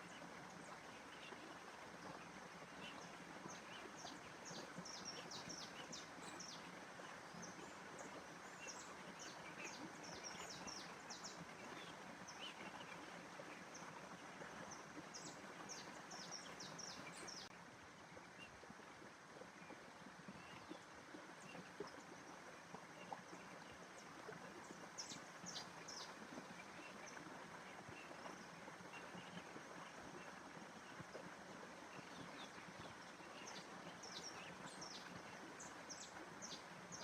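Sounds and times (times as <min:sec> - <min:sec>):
small birds chirping: 0:02.0 - 0:17.5.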